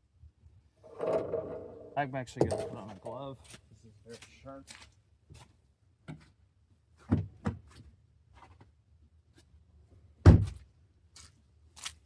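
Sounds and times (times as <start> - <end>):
objects knocking and tapping: 0.9 - 2.9.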